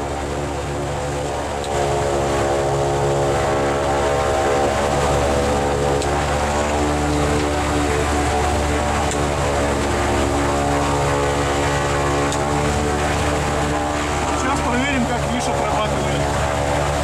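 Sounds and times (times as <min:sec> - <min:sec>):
aircraft engines running: 0:00.0 - 0:17.0.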